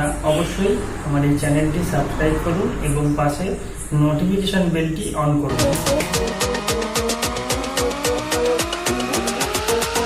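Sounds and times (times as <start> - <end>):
electronic music with fast beat: 5.5 - 10.0.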